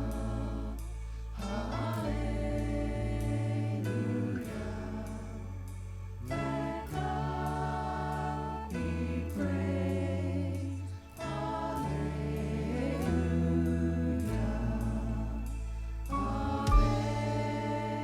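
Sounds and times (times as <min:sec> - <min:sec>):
instrumental accompaniment: 0:00.0 - 0:18.0
voices singing worship song: 0:00.0 - 0:18.0.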